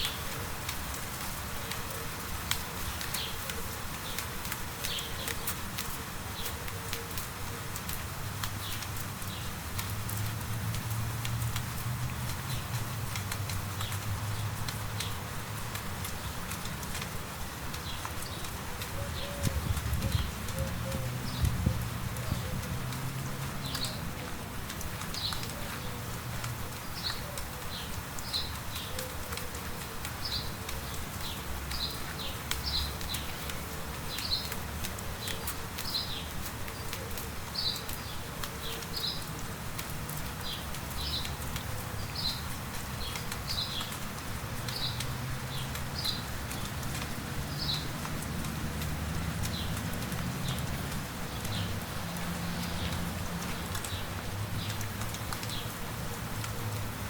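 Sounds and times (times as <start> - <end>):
light rain pattering: 0.0 - 57.0.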